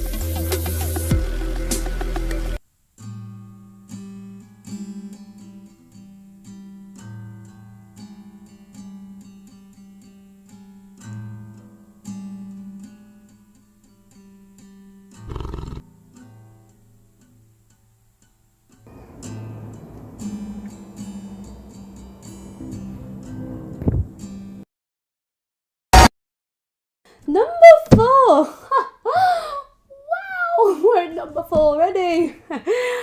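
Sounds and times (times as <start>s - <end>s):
soft acoustic guitar music: 2.9s - 15.2s, 15.8s - 24.6s.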